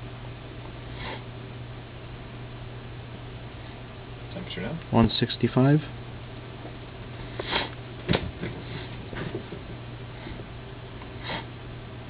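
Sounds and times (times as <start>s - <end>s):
steady low hum: 0.0s - 12.0s
person sniffing: 0.9s - 1.3s, 7.3s - 7.8s, 11.2s - 11.5s.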